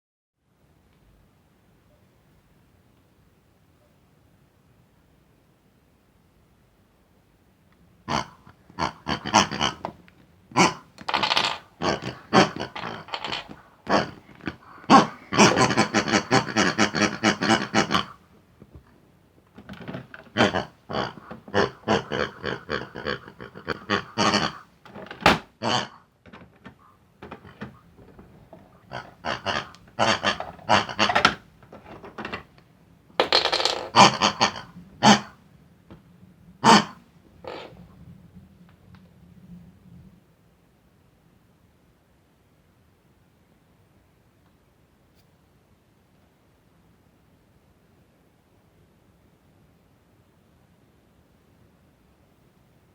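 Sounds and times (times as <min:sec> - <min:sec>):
squeaky pig-like grunts and squeals: 0:08.1 - 0:09.9, 0:10.6 - 0:18.2, 0:19.7 - 0:32.5, 0:33.2 - 0:35.4, 0:36.6 - 0:37.9.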